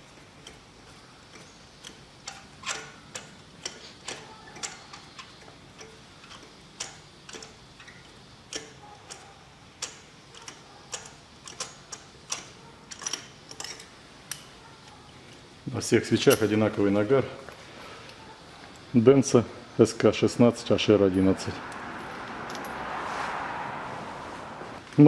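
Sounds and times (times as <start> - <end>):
hand tools clicking and tapping: 0.0 - 15.5, 21.7 - 22.9.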